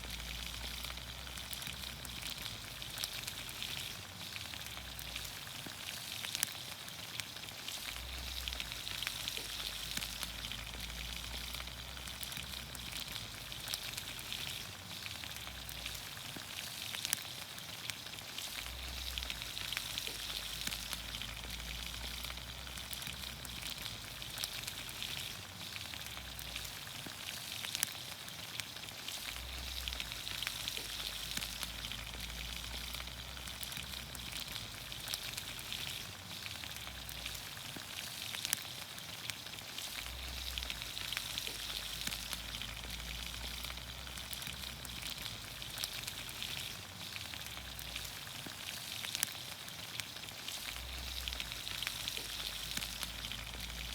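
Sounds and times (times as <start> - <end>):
sharp crackles: 0.0 - 53.9
vegetables sizzling in oil: 0.0 - 53.9.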